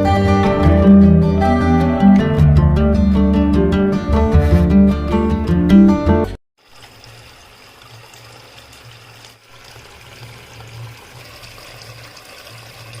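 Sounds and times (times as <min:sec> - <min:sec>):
water trickling down fountain: 0:06.6 - 0:13.0.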